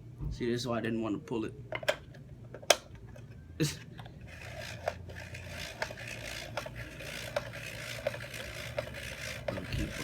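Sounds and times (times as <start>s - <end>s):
buffing wheel scraping disc: 4.2s - 10.0s.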